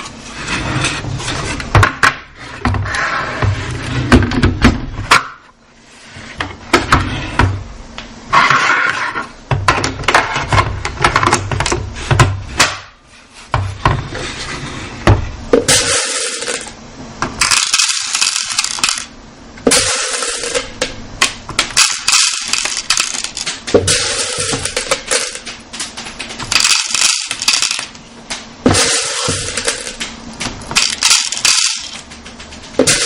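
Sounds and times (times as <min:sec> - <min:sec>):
sharp clicks and knocks: 0:20.8 - 0:33.0.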